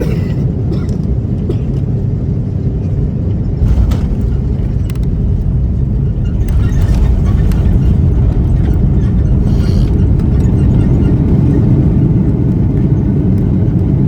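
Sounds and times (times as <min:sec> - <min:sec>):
aircraft cabin rumble: 0:00.0 - 0:14.0
landing gear touchdown jolt: 0:03.6 - 0:12.2.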